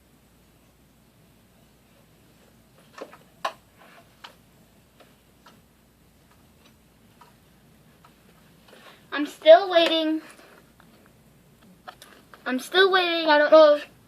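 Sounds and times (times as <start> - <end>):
light irregular clicks and taps: 2.8 - 8.9.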